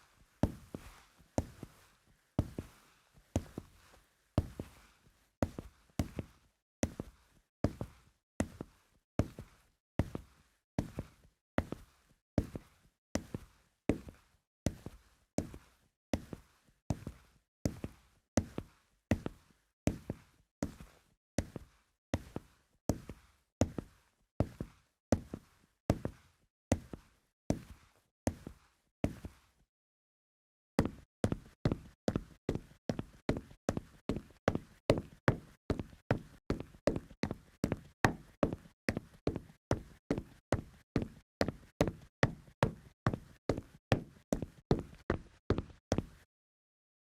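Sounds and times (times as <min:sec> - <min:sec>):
boot footsteps on hardwood floor: 0:30.8 - 0:46.1.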